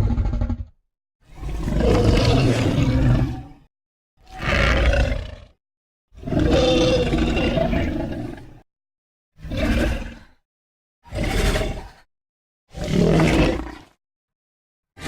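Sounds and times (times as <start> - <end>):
monster roar with deep rumble: 0.0 - 0.8, 1.5 - 3.6.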